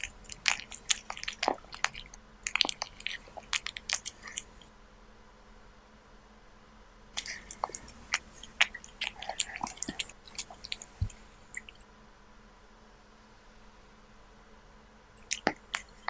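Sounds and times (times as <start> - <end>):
kitten chewing: 0.0 - 4.7, 7.2 - 11.8, 15.2 - 16.0.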